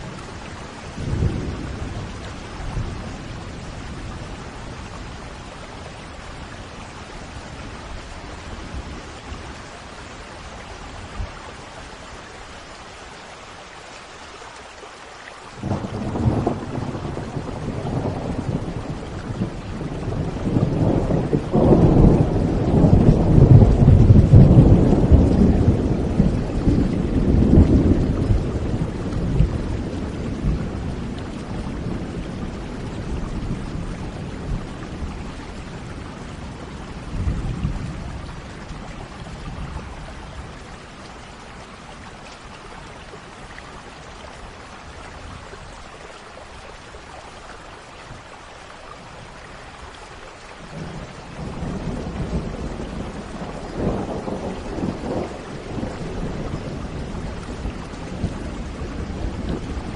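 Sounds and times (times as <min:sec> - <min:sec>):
steady rain: 0:00.0 - 0:59.9
rolling thunder: 0:00.9 - 0:05.3, 0:15.6 - 0:40.9, 0:50.6 - 0:59.9.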